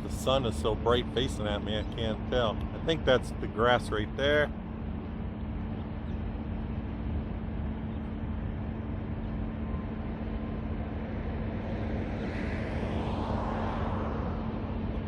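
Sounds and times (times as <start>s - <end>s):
traffic rumble: 0.0s - 15.0s
vehicle passing by: 10.8s - 15.0s.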